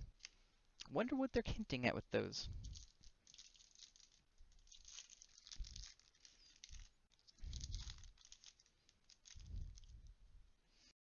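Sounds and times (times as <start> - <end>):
cards and wrappers crinkling: 2.4 - 10.2.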